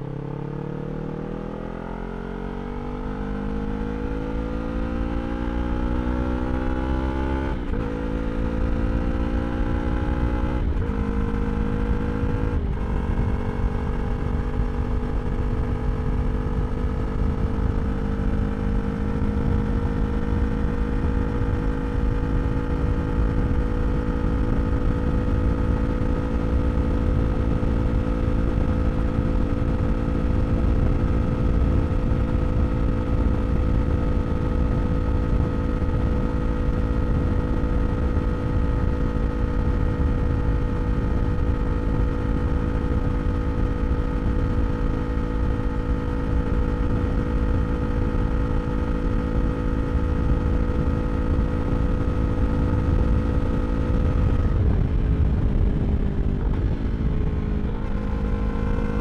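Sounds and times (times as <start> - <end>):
motorcycle engine accelerating: 0.0 - 59.0
wind rumble: 7.4 - 59.0.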